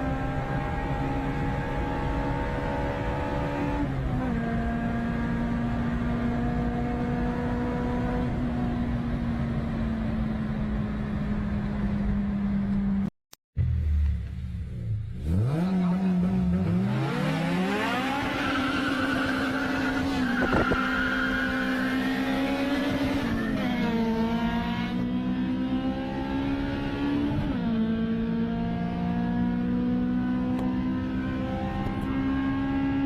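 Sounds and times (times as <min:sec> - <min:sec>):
car engine revving hard: 0:00.0 - 0:08.4, 0:15.2 - 0:33.0.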